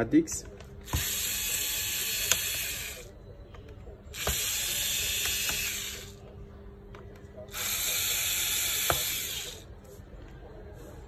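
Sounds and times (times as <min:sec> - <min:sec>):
electric screwdriver whirring: 0:00.9 - 0:03.1, 0:04.2 - 0:06.1, 0:07.5 - 0:09.6.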